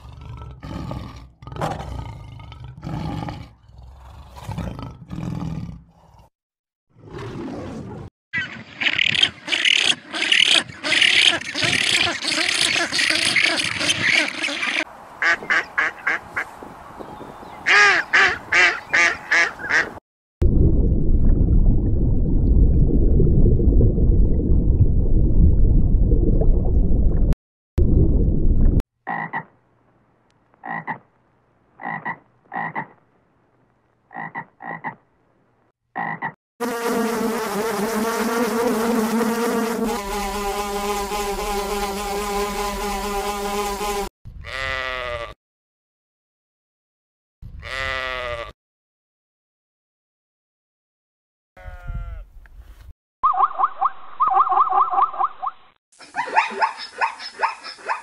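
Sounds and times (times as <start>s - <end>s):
dense low croaking: 20.4s - 28.8s
rapid repeated animal calls: 56.0s - 58.0s.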